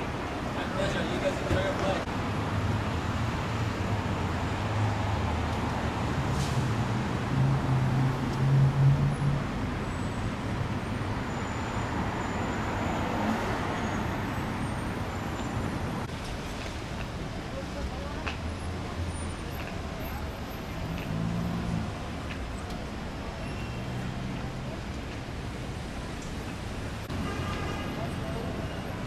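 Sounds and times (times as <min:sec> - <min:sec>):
road traffic: 0:00.0 - 0:29.0
vehicle engine accelerating: 0:06.1 - 0:10.0.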